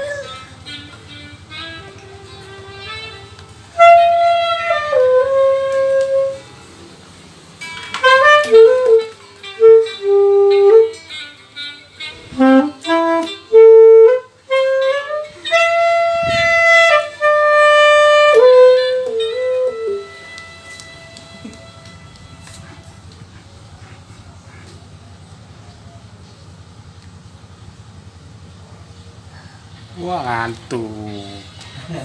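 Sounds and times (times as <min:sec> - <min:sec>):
saxophone melody: 0:00.0 - 0:26.6.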